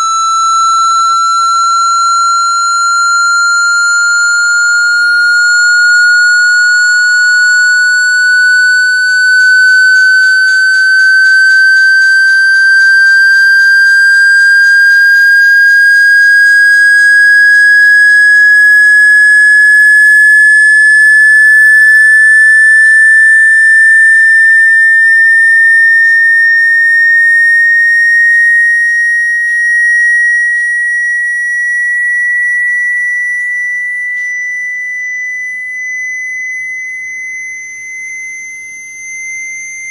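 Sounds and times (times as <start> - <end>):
rising sine tone sweep: 0.0 - 39.9.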